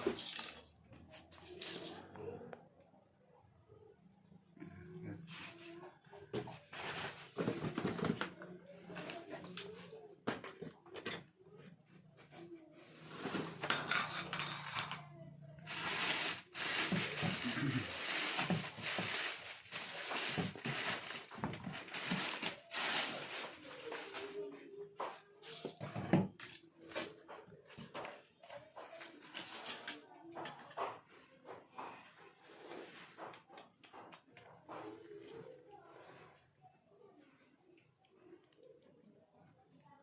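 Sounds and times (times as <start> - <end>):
packaging crackling and rustling: 15.7 - 24.4.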